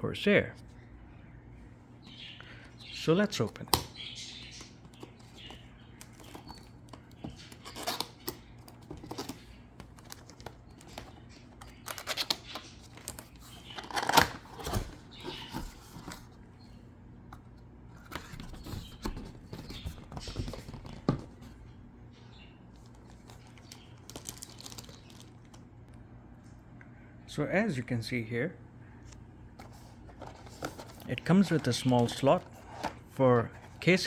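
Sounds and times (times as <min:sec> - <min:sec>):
cardboard box being unpacked: 0:11.8 - 0:16.3, 0:29.6 - 0:33.0.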